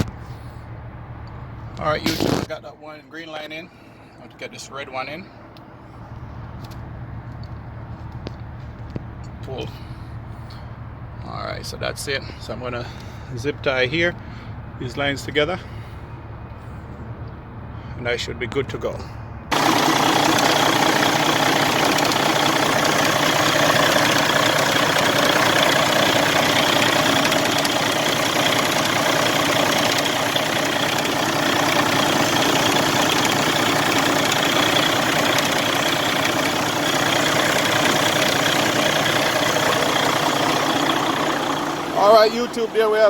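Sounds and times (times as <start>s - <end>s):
truck diesel engine idling: 19.5s - 43.0s.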